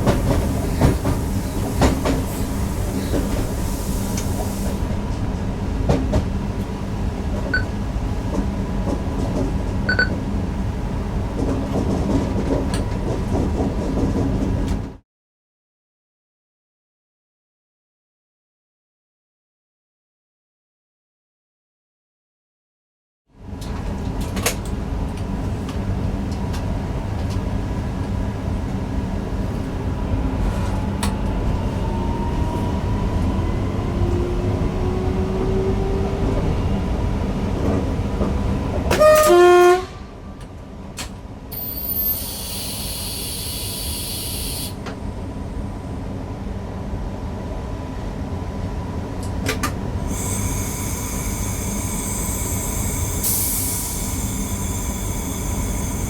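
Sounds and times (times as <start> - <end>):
train wheels rumbling on rails: 0.0 - 15.0, 23.4 - 39.5, 40.3 - 56.0
train horn blast: 38.9 - 40.4.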